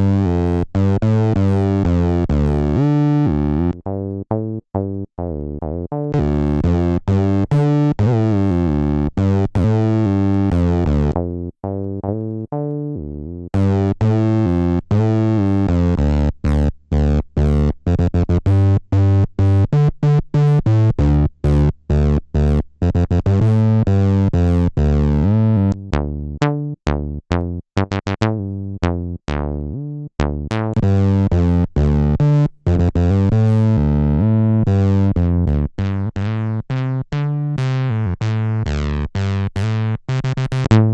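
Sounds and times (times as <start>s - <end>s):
synth acid bassline: 0.0s - 40.9s.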